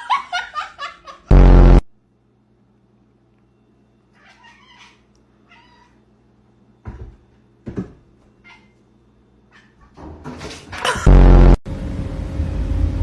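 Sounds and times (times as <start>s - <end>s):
cat meowing: 4.1s - 6.0s.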